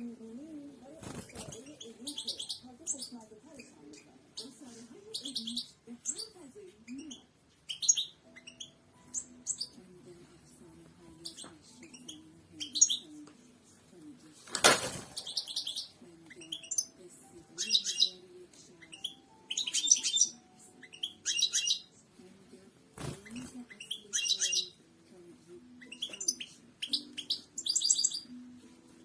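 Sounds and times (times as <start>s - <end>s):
goldfinch singing: 1.0s - 9.8s, 11.2s - 13.2s, 15.2s - 22.0s, 22.9s - 25.0s, 25.6s - 28.8s.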